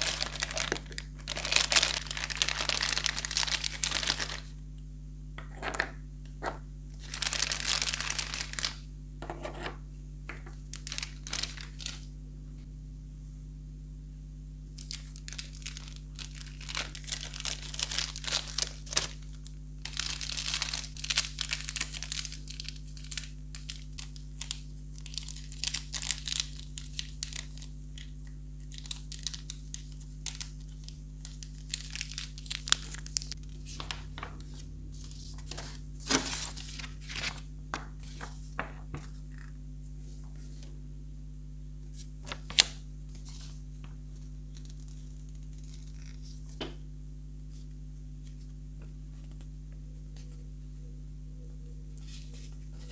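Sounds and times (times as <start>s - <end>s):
packaging crinkling and tearing: 0.0s - 4.5s, 7.0s - 8.8s, 10.5s - 12.1s, 14.8s - 39.5s, 42.2s - 46.6s
low electrical hum: 0.0s - 52.9s.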